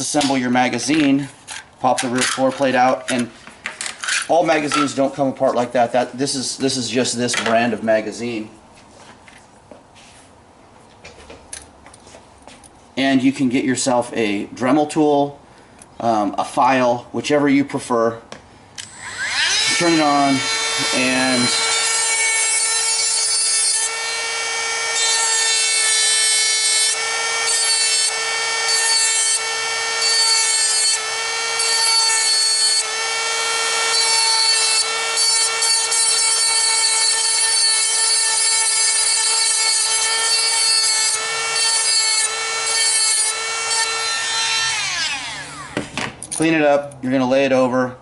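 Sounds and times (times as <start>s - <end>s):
bit grinding rasp: 18.8s - 45.9s
rotary tool whining: 18.8s - 46.0s.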